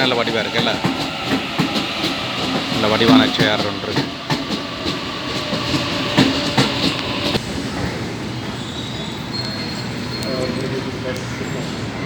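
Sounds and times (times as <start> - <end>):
train wheels clattering on track: 0.0 - 7.5.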